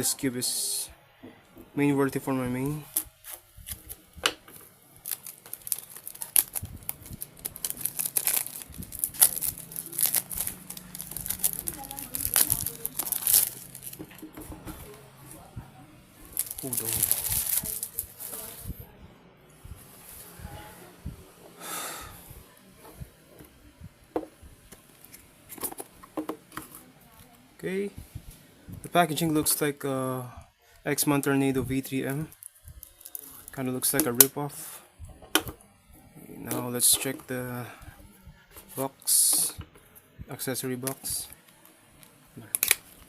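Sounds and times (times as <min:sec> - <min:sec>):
plastic packaging crinkling and tearing: 0:02.6 - 0:14.2, 0:16.2 - 0:18.7, 0:31.0 - 0:34.3, 0:40.8 - 0:43.0.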